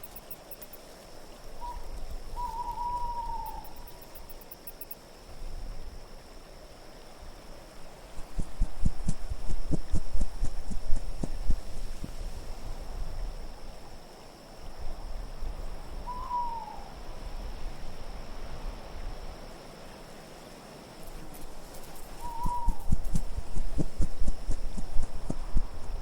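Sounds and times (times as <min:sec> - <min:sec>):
low wind noise: 0:00.0 - 0:19.9, 0:20.9 - 0:26.0
owl hoot falling in pitch: 0:01.6 - 0:03.8, 0:16.0 - 0:16.9, 0:22.2 - 0:23.2
soft low thumps: 0:08.2 - 0:12.2, 0:22.5 - 0:26.0.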